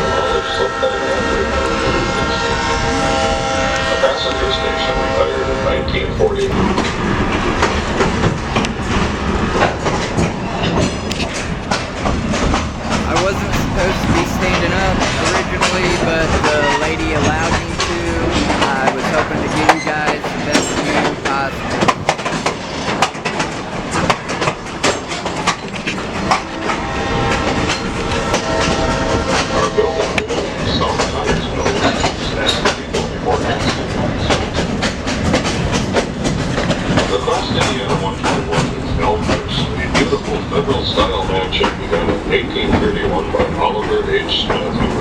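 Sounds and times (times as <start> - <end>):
train rumbling on track: 1.2 - 22.7
train rumble: 12.8 - 22.6.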